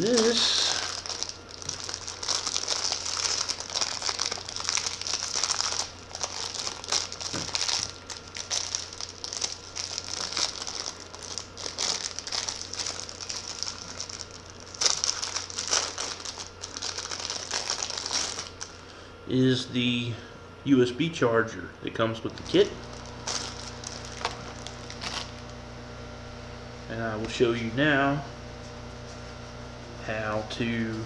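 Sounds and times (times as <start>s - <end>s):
packaging crinkling and rustling: 0.0s - 18.8s, 22.3s - 25.5s.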